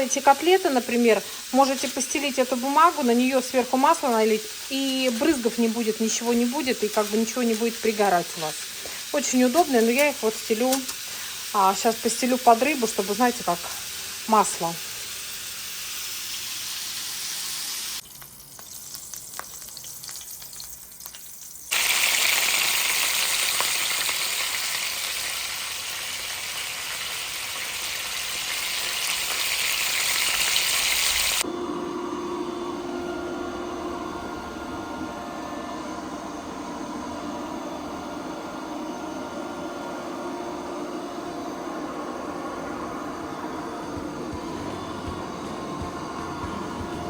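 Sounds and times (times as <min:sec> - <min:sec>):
fish sizzling in hot oil: 0:02.6 - 0:31.4
low steady hum: 0:31.4 - 0:47.0.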